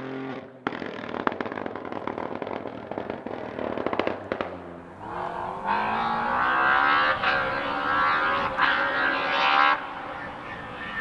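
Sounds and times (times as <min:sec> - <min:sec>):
car engine accelerating hard: 0:03.2 - 0:11.0.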